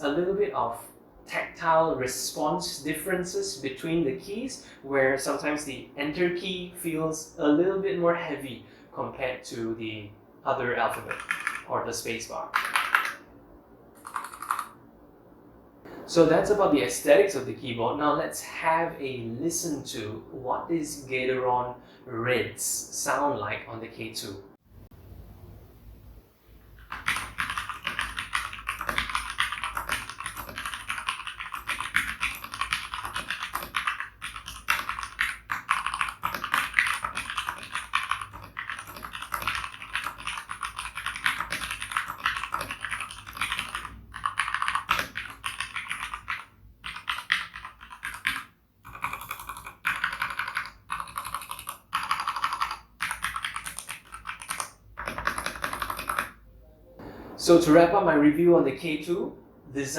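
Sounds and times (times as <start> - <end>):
mechanical keyboard typing: 11.0 - 11.7, 12.5 - 13.2, 14.0 - 14.8, 26.8 - 56.4.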